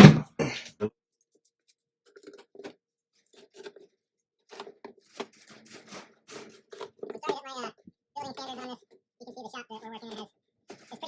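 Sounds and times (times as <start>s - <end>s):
fastener clicks and scrapes: 2.1s - 7.3s.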